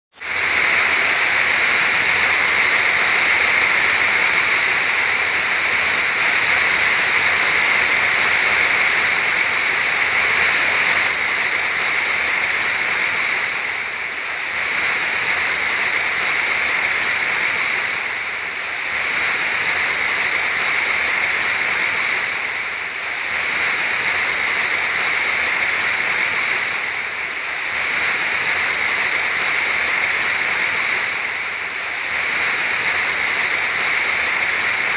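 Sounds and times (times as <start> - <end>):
waterfall rushing: 0.2 - 34.9.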